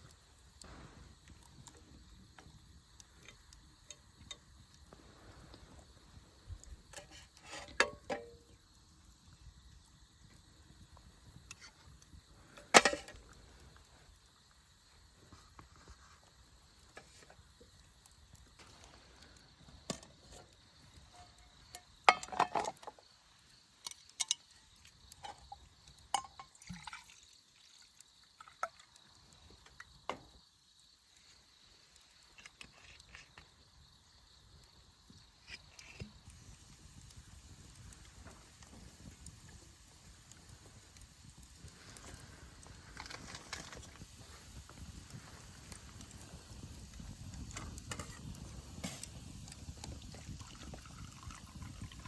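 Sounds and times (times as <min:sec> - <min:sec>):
faint background hiss: 0:00.0 - 0:52.0.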